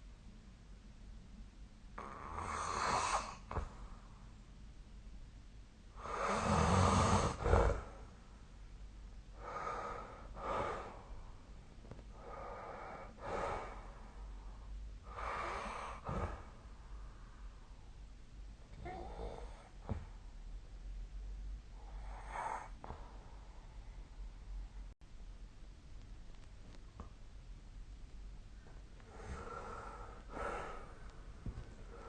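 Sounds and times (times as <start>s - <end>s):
person snoring: 2.0s - 3.7s, 6.0s - 8.0s
heavy sleep breathing: 5.9s - 8.1s, 9.3s - 11.4s, 12.1s - 17.8s, 21.8s - 24.2s, 29.0s - 32.0s.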